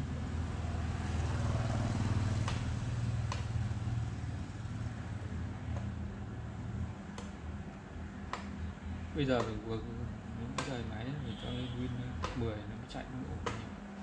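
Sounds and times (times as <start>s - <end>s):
low engine hum: 0.0s - 14.0s
sharp clicks: 2.4s - 2.7s.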